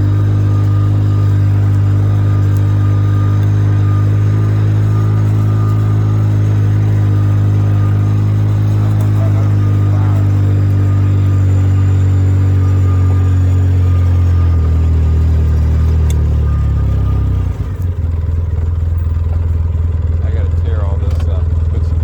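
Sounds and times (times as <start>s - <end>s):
atv engine running: 0.0s - 22.0s.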